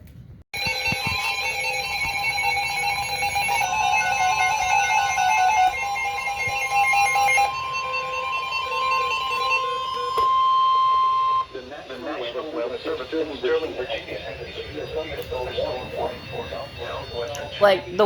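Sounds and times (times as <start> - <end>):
warbling data chirps: 0.6 - 17.9
steady warning alarm tone: 0.6 - 18.0.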